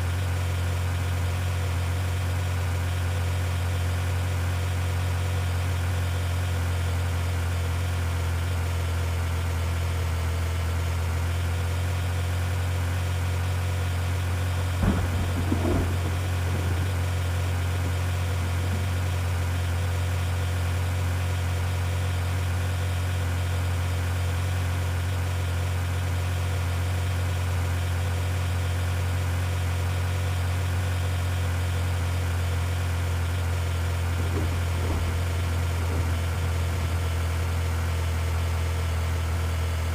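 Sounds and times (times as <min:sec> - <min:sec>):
car engine idling: 0:00.0 - 0:39.9
brief knock or rattle: 0:34.1 - 0:37.4.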